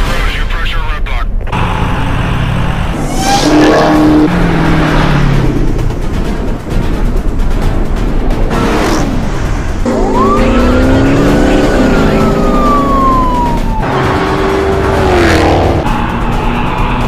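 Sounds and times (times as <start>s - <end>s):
car engine noise: 1.4s - 17.0s
police siren wailing: 9.9s - 17.0s.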